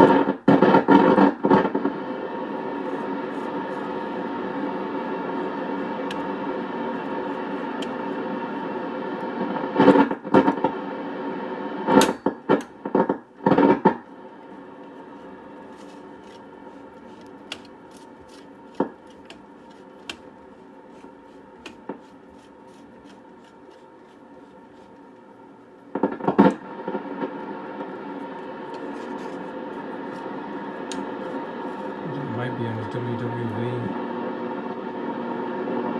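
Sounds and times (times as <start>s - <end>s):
loud crackling bursts: 0.0s - 35.9s
radio buzzing tone with static: 0.0s - 35.9s.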